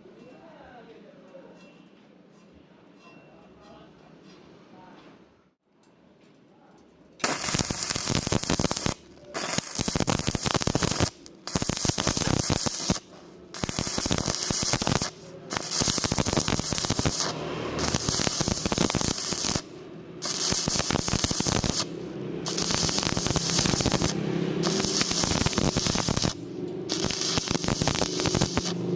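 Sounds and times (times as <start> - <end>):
welding arc crackling and sizzling: 7.2 - 28.9.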